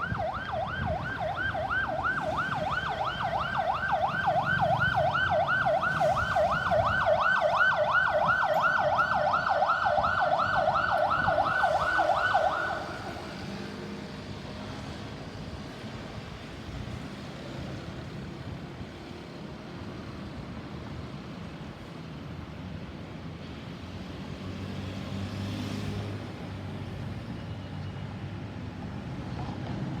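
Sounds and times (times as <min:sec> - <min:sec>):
ambulance siren yelping: 0:00.0 - 0:13.5
road traffic noise: 0:00.0 - 0:30.0.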